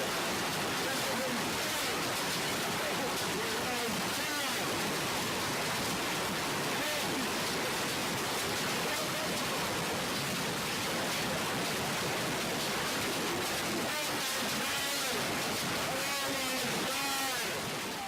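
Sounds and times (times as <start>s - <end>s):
hail and rain pelting down: 0.0s - 18.0s.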